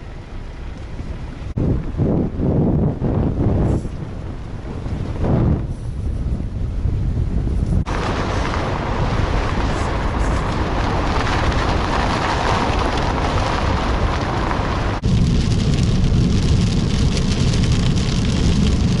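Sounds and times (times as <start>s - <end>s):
deep rumbling noise: 0.0s - 19.0s
heavy rain: 7.8s - 19.0s.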